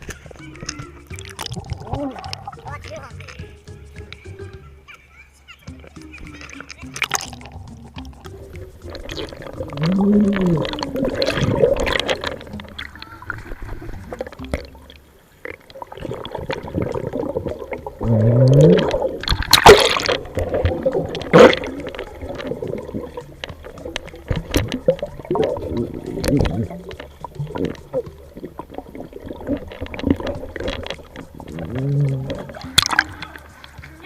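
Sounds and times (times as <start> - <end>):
water gurgling underwater: 0.0 - 2.8, 6.3 - 33.8
muffled wavering low tones: 5.7 - 34.0.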